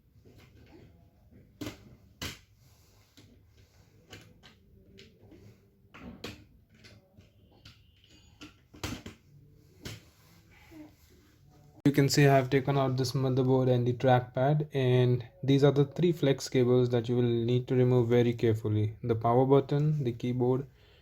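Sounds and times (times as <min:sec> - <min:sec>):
laptop parts clicking and knocking: 0:03.9 - 0:10.1.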